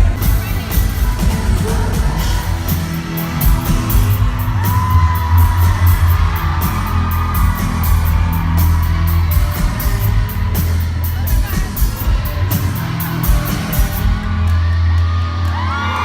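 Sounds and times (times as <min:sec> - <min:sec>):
person singing: 0:00.0 - 0:08.3
live pop-rock band: 0:00.0 - 0:16.0.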